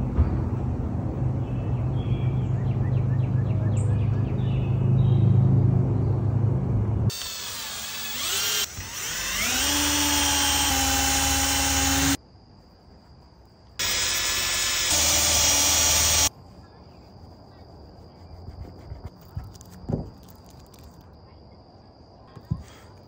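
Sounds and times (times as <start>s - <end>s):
power drill running: 7.1s - 12.2s, 13.8s - 16.3s.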